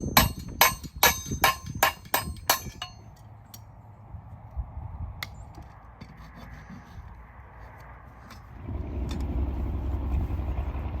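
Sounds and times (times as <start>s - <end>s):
hammer strikes on metal: 0.0s - 3.1s
low steady rumble: 0.0s - 11.0s.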